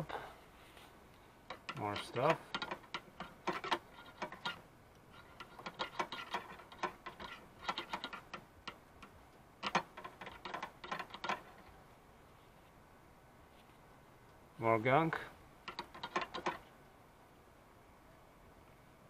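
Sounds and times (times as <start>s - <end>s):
wire clicking and scraping metal: 1.1s - 11.8s, 15.6s - 16.8s.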